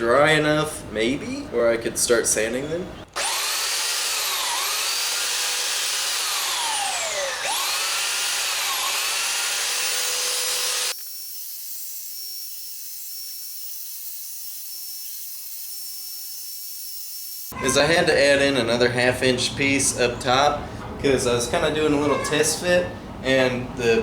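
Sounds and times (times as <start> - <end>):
higher machine whir: 3.1 - 11.0
power sander on wood: 3.2 - 17.6.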